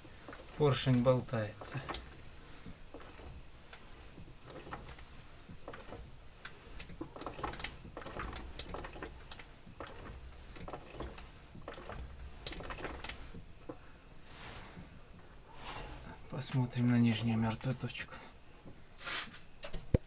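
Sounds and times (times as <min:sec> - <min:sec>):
light metallic clicks and knocks: 0:00.2 - 0:13.9.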